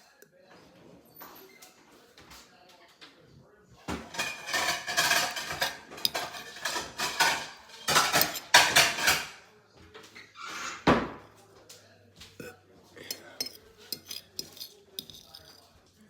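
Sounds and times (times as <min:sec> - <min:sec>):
cutlery scraping plates: 0:03.8 - 0:11.2, 0:12.4 - 0:16.0.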